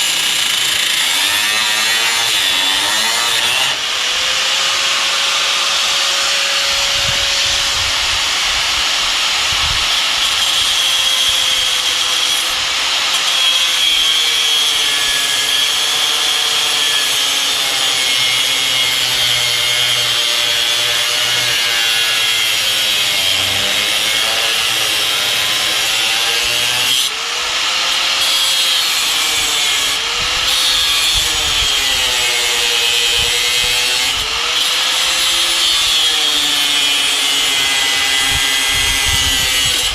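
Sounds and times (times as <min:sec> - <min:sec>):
grinder cutting metal: 0:00.0 - 0:39.9.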